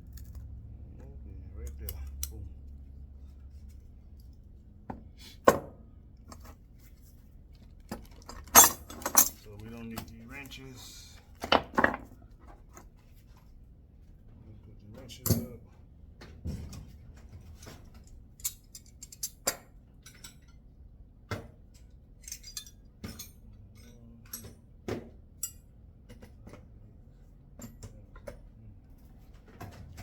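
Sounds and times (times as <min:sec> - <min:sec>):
metal tools clinking: 0:08.0 - 0:10.6, 0:18.0 - 0:20.6, 0:22.2 - 0:24.6.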